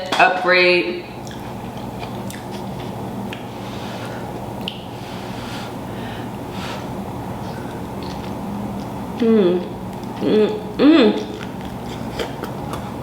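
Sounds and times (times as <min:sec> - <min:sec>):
steady low hum: 0:00.0 - 0:13.0
wet chewing: 0:01.2 - 0:03.5, 0:07.5 - 0:09.0, 0:11.2 - 0:13.0.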